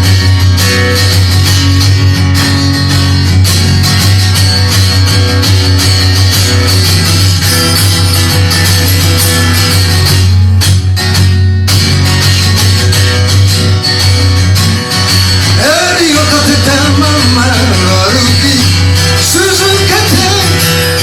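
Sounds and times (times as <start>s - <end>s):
rock band music with guitar: 0.0s - 21.0s
person singing: 15.5s - 20.8s.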